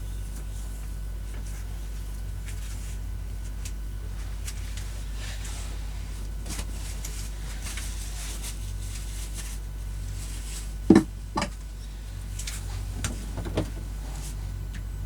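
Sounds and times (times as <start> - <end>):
sharp knocks: 10.9 - 11.5
low hum: 14.7 - 15.0.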